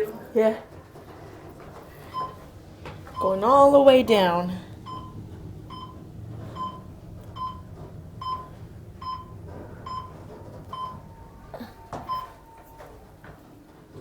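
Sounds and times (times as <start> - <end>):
low elevator rumble: 0.0 - 14.0.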